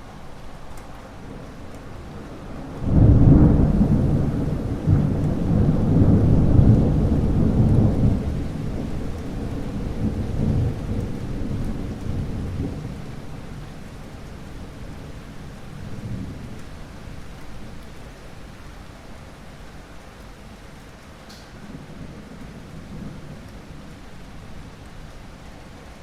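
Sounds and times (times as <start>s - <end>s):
steady rain: 0.0s - 26.0s
thunder clap and rumble: 1.2s - 18.0s, 21.6s - 26.0s.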